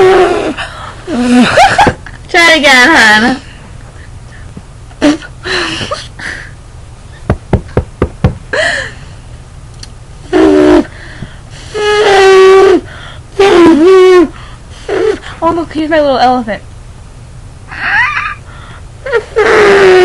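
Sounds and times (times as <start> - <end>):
girl imitating elephant trumpeting: 0.0 - 1.3, 10.3 - 10.9, 11.8 - 12.8, 19.3 - 20.0.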